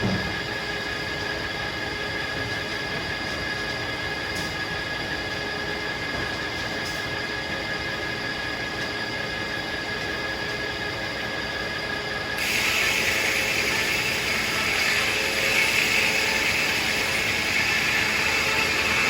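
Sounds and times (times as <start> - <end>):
sawmill humming and whining: 0.0 - 19.0
saw blade cutting log: 12.4 - 19.0.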